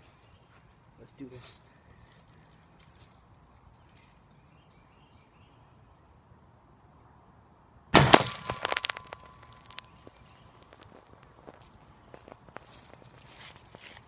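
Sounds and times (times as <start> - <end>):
can bursting with loud pop: 8.0 - 9.9.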